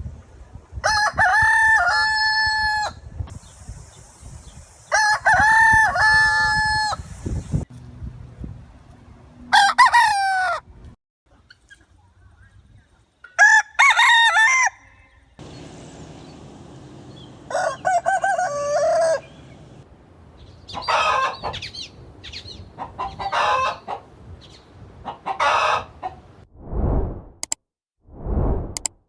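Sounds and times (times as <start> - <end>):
rooster crowing: 9.5 - 10.6, 13.4 - 15.2, 17.1 - 19.8, 20.8 - 21.6
chickens calling harshly: 15.4 - 19.8, 20.4 - 26.3.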